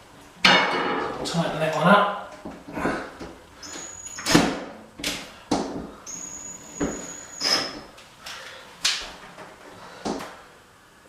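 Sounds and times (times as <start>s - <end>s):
thin high whine: 3.6s - 4.4s, 6.0s - 8.0s.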